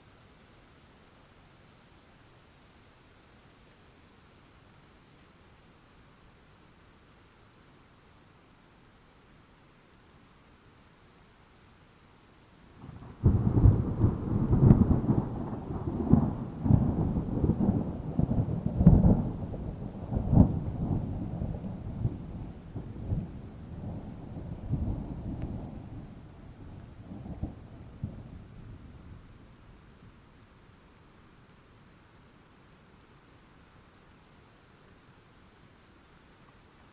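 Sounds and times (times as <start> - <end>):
faint rain hiss: 0.0 - 36.9
thunder rumbling and cracking: 12.8 - 29.4.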